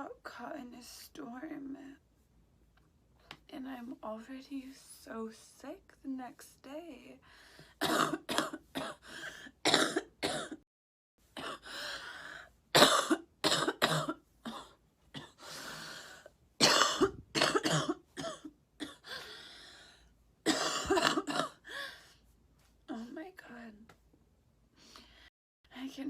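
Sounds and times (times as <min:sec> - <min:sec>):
woman coughing: 0:07.8 - 0:10.6, 0:11.4 - 0:11.7, 0:12.8 - 0:15.4, 0:16.6 - 0:19.1, 0:20.5 - 0:21.8.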